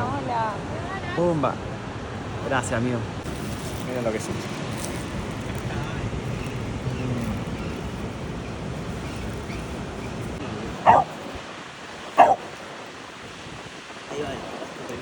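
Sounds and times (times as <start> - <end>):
surf rushing: 4.2 - 15.0
dog barking: 10.8 - 11.3, 12.2 - 12.6.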